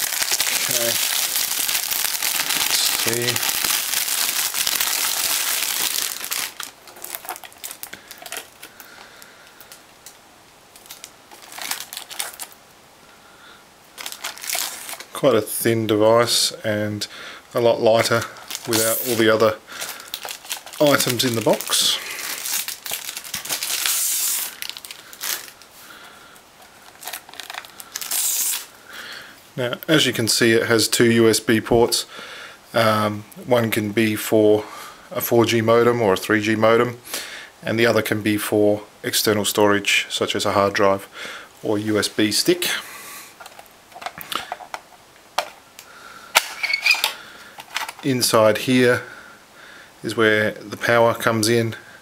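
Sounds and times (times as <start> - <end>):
packaging crinkling: 0.0 - 12.6, 14.0 - 15.2, 18.0 - 25.7, 26.6 - 28.7, 43.4 - 48.1.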